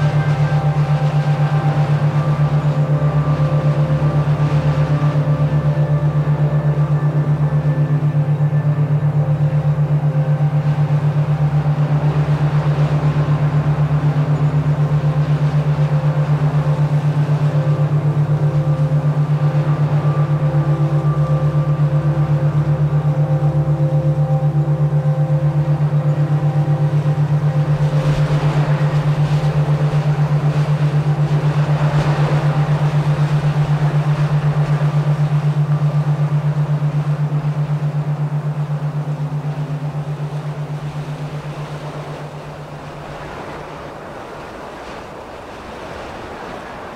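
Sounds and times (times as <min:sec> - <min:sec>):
faint held higher tones: 0:00.0 - 0:46.9
low throbbing electronic hum: 0:00.0 - 0:46.9.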